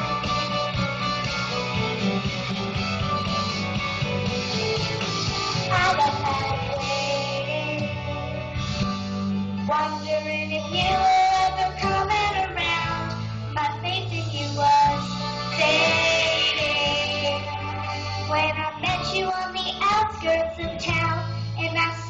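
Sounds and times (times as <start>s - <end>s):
instrumental accompaniment: 0.0s - 21.1s
person singing: 5.7s - 8.5s, 9.7s - 22.0s.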